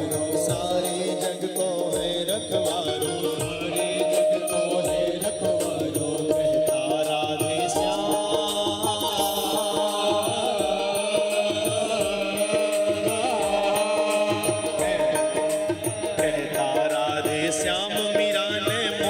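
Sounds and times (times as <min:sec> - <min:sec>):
steady percussion beat: 0:00.0 - 0:19.0.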